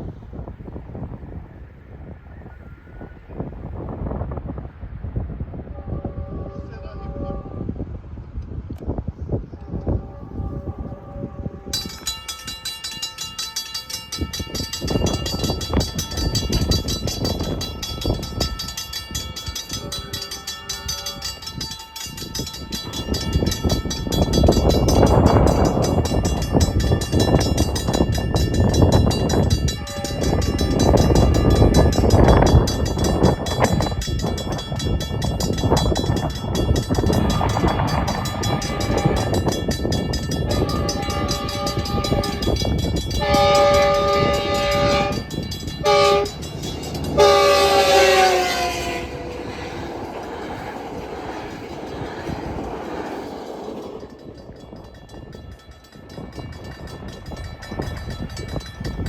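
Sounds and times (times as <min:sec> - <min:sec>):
train passing at speed: 0:00.0 - 0:59.0
locomotive air horn chord: 0:09.6 - 0:11.8, 0:29.6 - 0:32.3, 0:38.2 - 0:39.6, 0:40.5 - 0:49.9.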